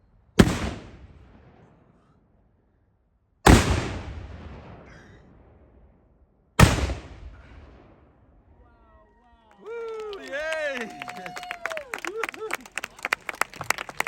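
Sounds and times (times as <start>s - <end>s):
cannon booms with rolling echo: 0.4s - 2.4s, 3.4s - 8.6s.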